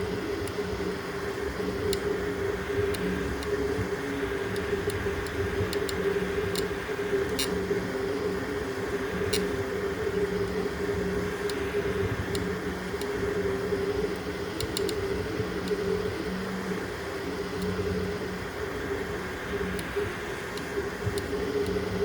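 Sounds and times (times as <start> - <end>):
fan-like hiss: 0.0 - 22.0
printer mechanical hum: 0.0 - 22.0
faint clicks: 4.4 - 7.7, 9.2 - 9.6, 14.0 - 16.2, 19.6 - 22.0.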